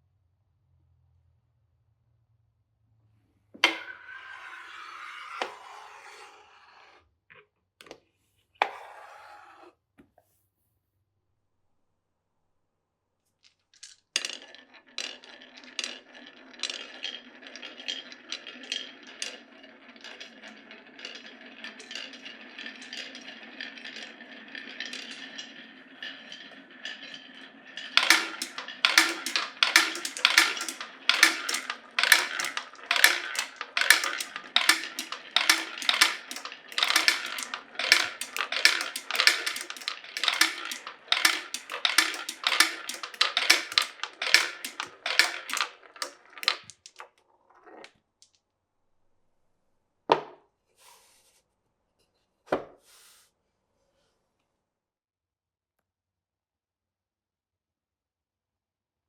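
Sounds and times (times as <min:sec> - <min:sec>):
marbles rolling on wooden run: 0:03.6 - 0:07.0, 0:13.8 - 0:48.0.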